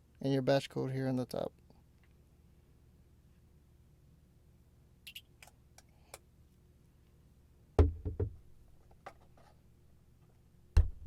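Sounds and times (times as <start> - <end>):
quick knocks with dull thud: 7.8 - 8.4, 10.8 - 11.0.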